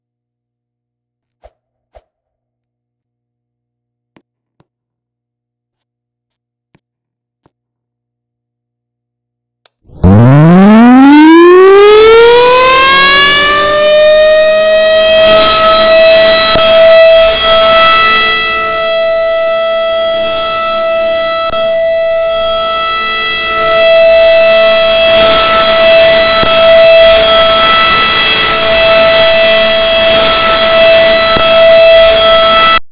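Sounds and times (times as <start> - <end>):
warning siren winding up to a wail: 9.9 - 32.9.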